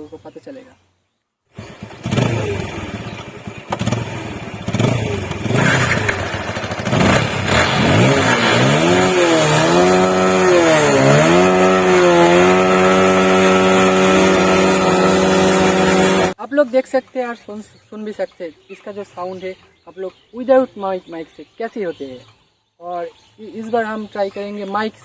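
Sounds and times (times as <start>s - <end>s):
motorcycle engine revving: 1.5s - 16.4s.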